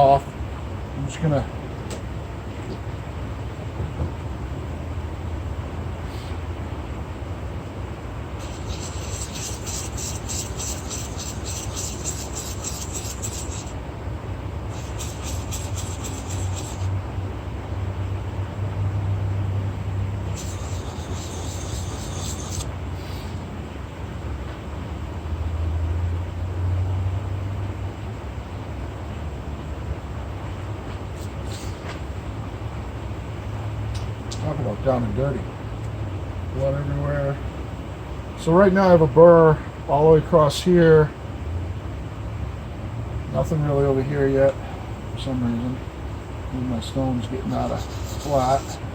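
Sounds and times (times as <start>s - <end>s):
plane iron scraping on sharpening stone: 8.4s - 13.8s, 20.3s - 22.7s, 47.6s - 48.8s.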